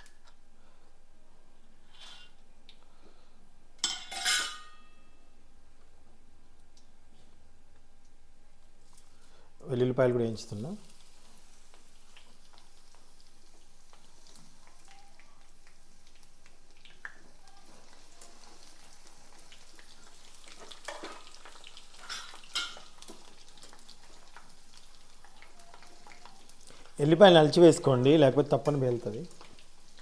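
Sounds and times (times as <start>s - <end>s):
food sizzling in oil: 10.3s - 30.0s.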